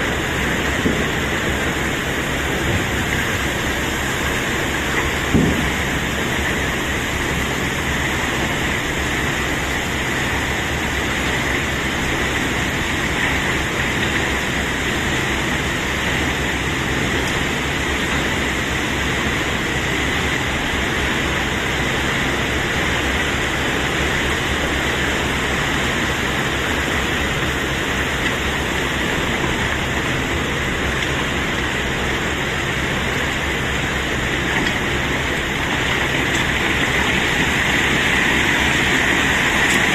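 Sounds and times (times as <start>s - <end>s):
stones pouring: 33.4s - 39.9s.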